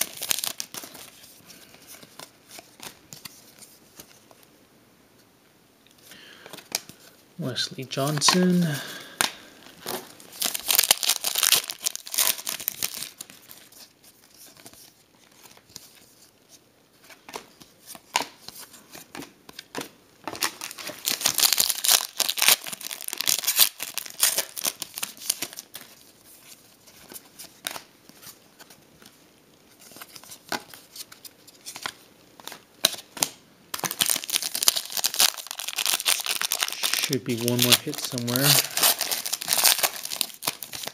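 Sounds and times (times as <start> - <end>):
foil wrappers tearing and crinkling: 0.0 - 1.2, 8.0 - 13.8, 20.3 - 25.9, 33.8 - 40.9.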